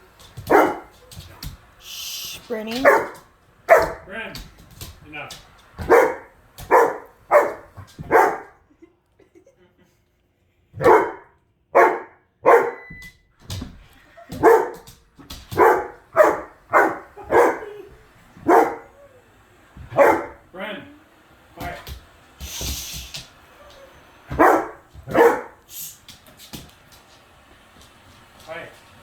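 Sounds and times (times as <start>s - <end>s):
dog barking: 0.5s - 1.1s, 2.8s - 4.1s, 5.8s - 8.6s, 10.8s - 12.9s, 14.3s - 19.0s, 19.9s - 20.4s, 23.6s - 25.6s.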